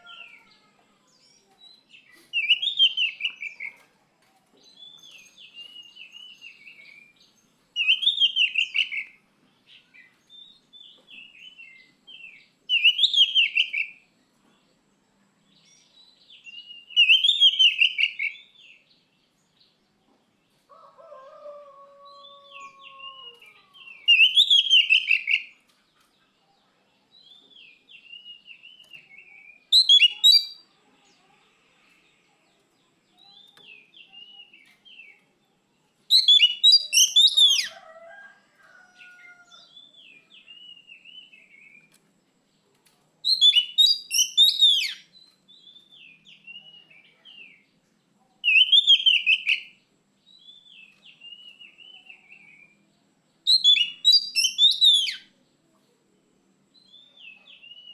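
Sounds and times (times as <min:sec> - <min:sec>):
bird whistled song: 0:02.4 - 0:03.6, 0:07.8 - 0:09.1, 0:12.7 - 0:14.0, 0:16.5 - 0:18.5, 0:24.1 - 0:25.5, 0:28.2 - 0:30.6, 0:36.1 - 0:37.7, 0:43.3 - 0:45.8, 0:48.4 - 0:49.7, 0:53.5 - 0:55.3.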